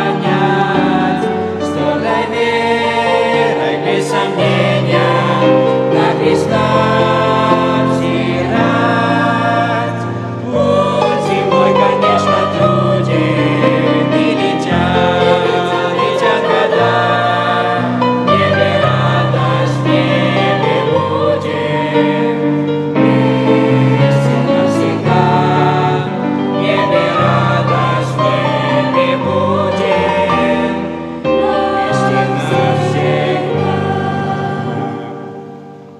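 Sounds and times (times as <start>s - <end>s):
choir singing: 0.0s - 35.9s
instrumental accompaniment: 0.0s - 35.9s.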